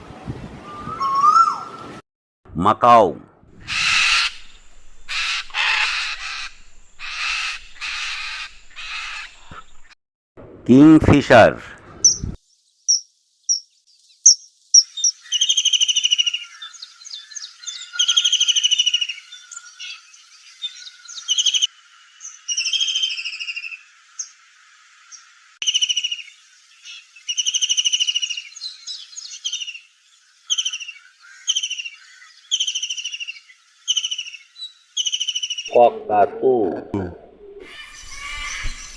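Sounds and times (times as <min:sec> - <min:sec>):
kingfisher calling: 0:03.6 - 0:10.0.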